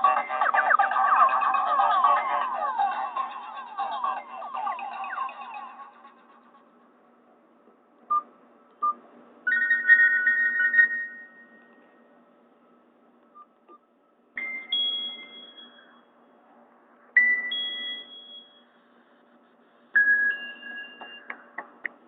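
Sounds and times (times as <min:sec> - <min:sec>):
warbling two-note ringtone: 0:00.0 - 0:06.1.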